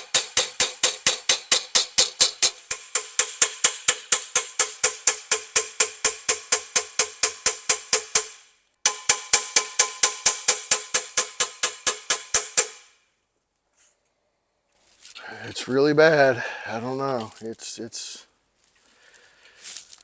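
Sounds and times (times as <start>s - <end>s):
mallet tapping on metal tube: 0.2s - 12.8s.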